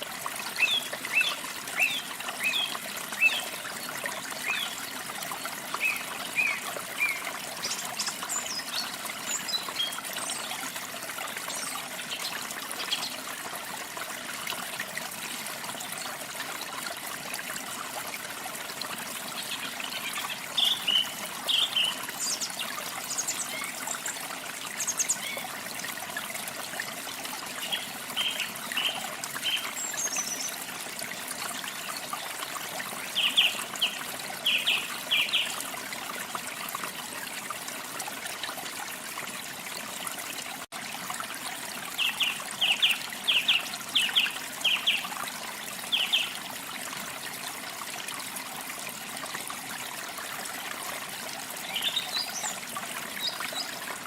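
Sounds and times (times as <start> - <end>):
running water trickling: 0.0 - 54.0
small songbirds chirping: 5.7 - 10.6, 19.2 - 25.5, 33.0 - 35.6, 51.6 - 52.6.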